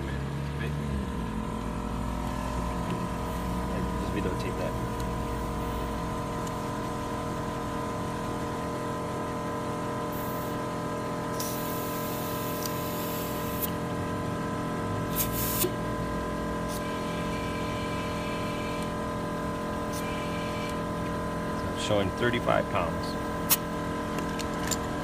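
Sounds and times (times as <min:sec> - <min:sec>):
air compressor humming and whining: 0:00.0 - 0:25.0
air hissing: 0:11.3 - 0:13.7, 0:15.1 - 0:15.8.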